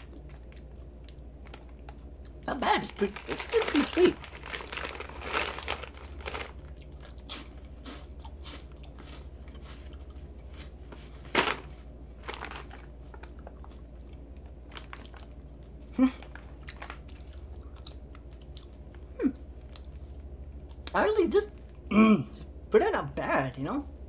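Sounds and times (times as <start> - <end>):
person chewing crunchy snack: 3.2 - 20.9.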